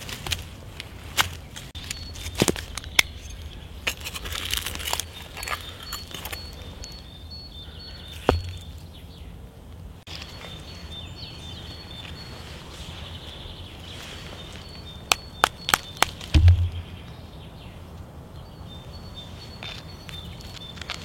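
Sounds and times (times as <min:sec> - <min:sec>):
outdoor background noise: 0:00.0 - 0:21.0
sharp knock: 0:16.4 - 0:16.9.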